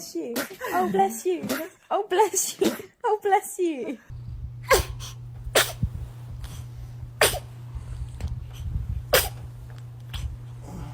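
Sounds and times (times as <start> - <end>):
baby sneezing: 4.7 - 5.9, 7.2 - 7.5, 9.1 - 9.4.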